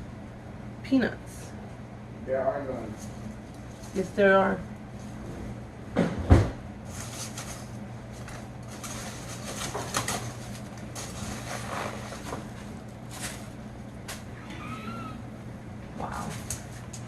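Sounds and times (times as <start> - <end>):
packing peanuts and cardboard rustling: 6.9 - 14.3.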